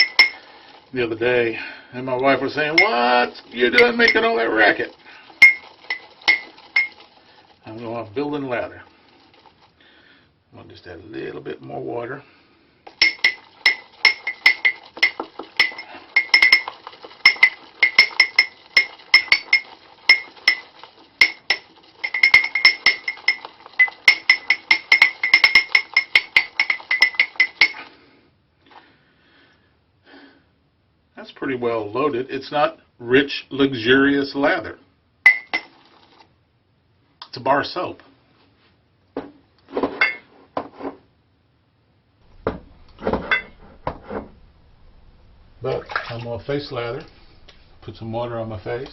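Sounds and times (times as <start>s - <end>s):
shaving brush clinking in mug: 0.0s - 0.5s, 2.6s - 7.2s, 12.9s - 27.9s, 35.3s - 36.2s
water running: 0.0s - 9.9s, 12.9s - 27.9s, 42.2s - 48.9s.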